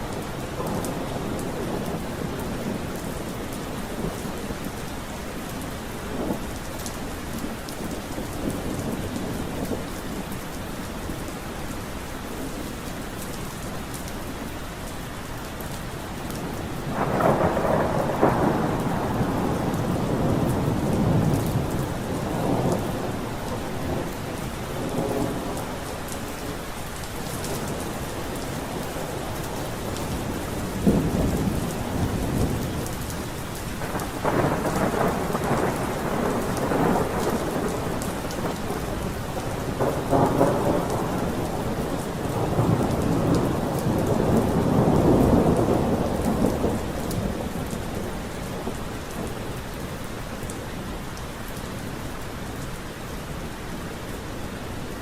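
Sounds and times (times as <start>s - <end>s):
steady rain: 0.0s - 55.0s
thunder rumbling: 16.4s - 26.1s, 27.2s - 50.2s.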